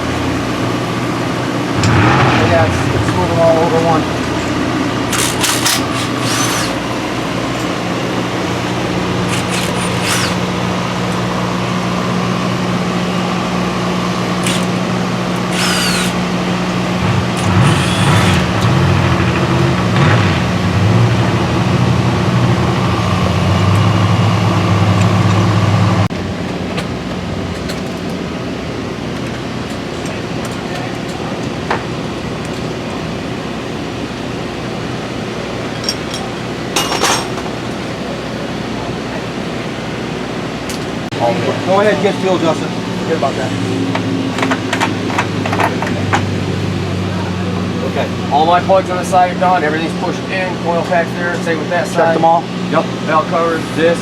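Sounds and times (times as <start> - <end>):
motor running: 0.1 - 26.1.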